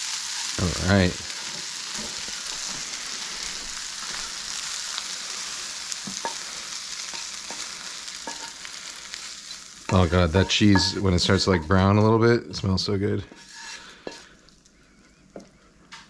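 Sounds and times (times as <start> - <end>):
food sizzling in a hot pan: 0.0 - 12.0, 13.3 - 15.4.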